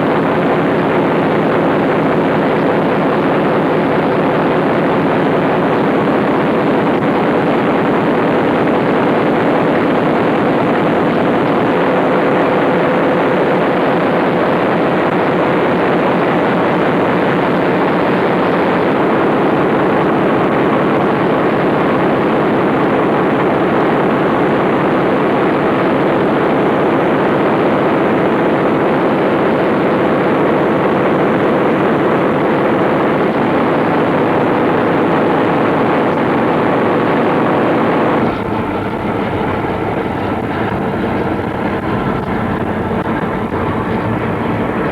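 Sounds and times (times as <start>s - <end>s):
diesel generator engine drone: 0.0s - 44.9s.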